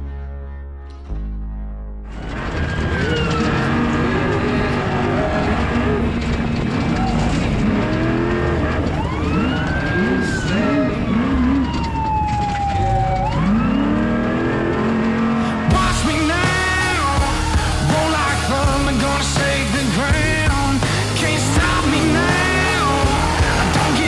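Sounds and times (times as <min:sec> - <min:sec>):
engine running hard: 0:13.4 - 0:24.0
high whine: 0:15.7 - 0:24.0.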